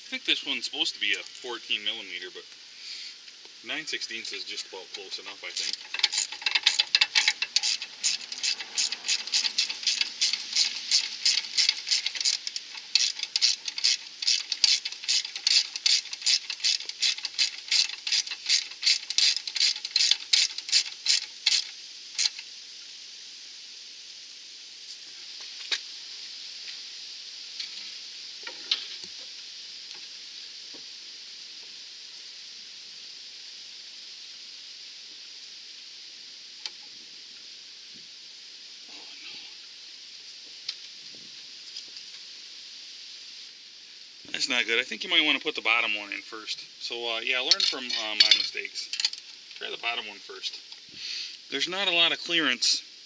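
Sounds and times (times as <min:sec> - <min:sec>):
steady hiss: 0:00.0 - 0:53.0
ratchet wrench clicking: 0:05.6 - 0:22.4.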